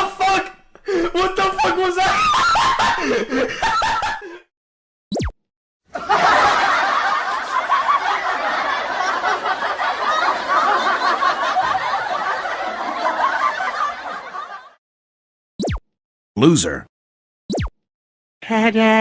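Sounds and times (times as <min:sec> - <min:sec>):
audience laughing: 0:01.2 - 0:04.4, 0:05.9 - 0:14.8.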